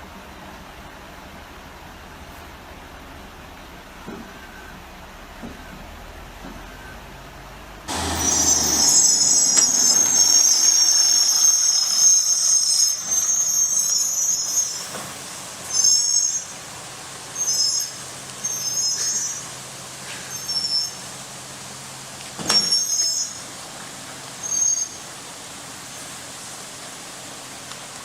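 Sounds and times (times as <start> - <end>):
truck brakes squealing: 7.9 - 16.7, 17.3 - 21.2, 22.4 - 23.5, 24.4 - 25.2.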